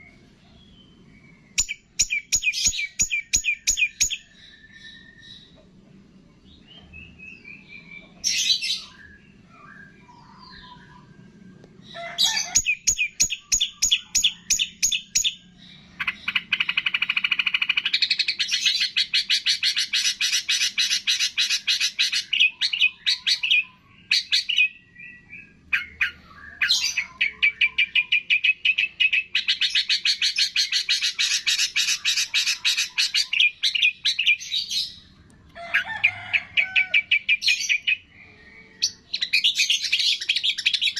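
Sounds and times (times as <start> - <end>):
songbird chirps: 0.0 - 40.9.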